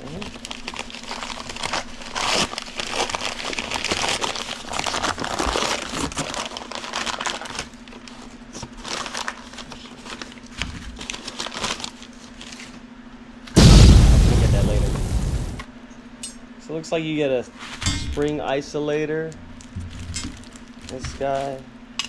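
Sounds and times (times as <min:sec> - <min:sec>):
loud thump: 0:13.6 - 0:15.6.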